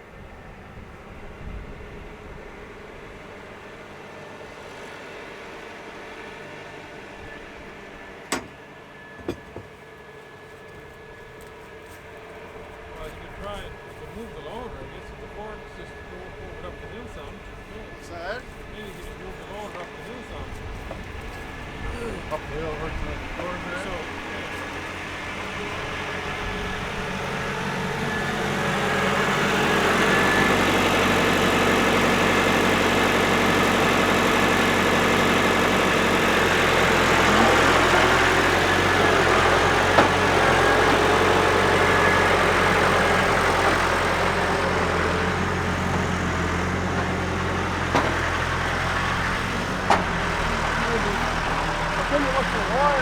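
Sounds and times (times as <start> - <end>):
tractor engine running: 0.0 - 53.0.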